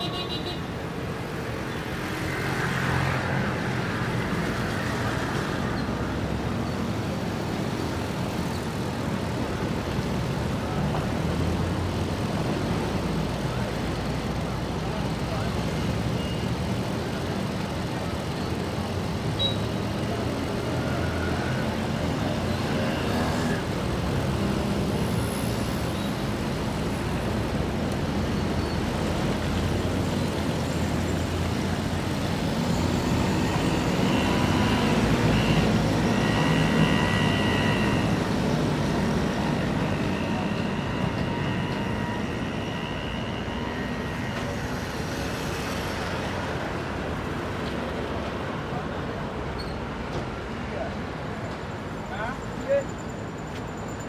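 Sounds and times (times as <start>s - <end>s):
road traffic rumble: 0.0s - 54.0s
drawn-out high tones: 28.6s - 46.7s.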